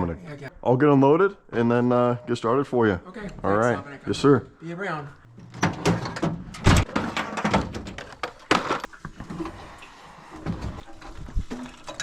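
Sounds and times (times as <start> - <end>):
knocks and clatters of equipment: 5.4 - 9.6.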